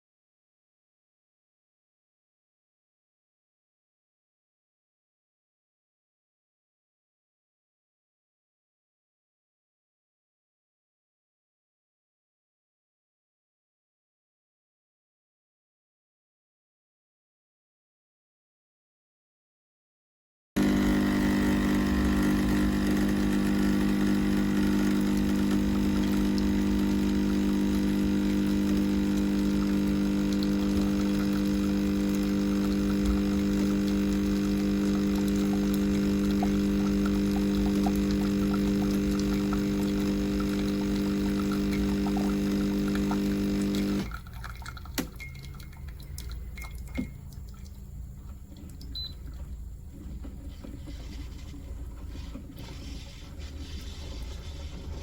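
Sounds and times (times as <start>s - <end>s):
espresso machine pump humming: 20.6s - 44.2s.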